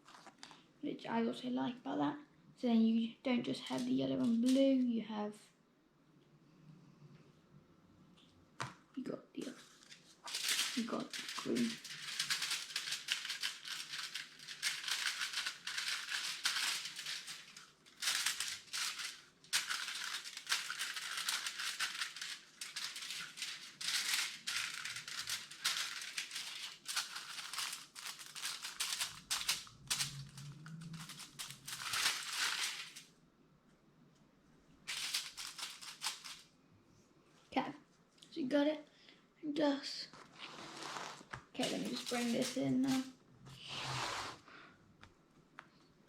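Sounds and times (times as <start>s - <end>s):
paint brush rubbing on paper: 40.4s - 43.0s, 43.6s - 44.5s.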